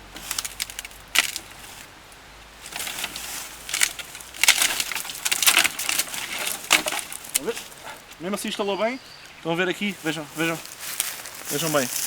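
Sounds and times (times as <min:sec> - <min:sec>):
tree branch snapping: 0:00.0 - 0:01.9, 0:02.6 - 0:08.2.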